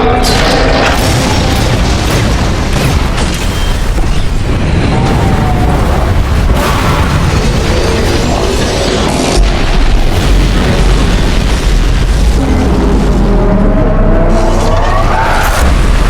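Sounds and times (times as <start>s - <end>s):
explosion booms: 0.0s - 14.2s, 15.4s - 16.0s
low rumble: 0.0s - 16.0s.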